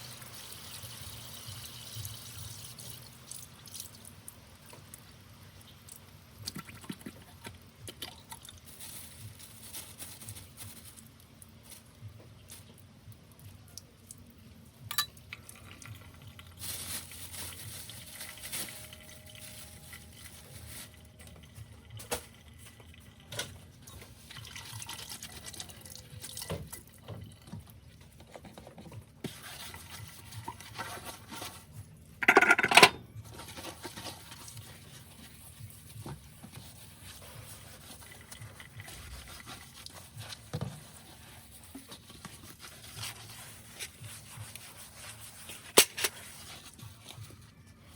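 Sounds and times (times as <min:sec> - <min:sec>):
plates clinking and knocking: 0:32.2 - 0:33.1.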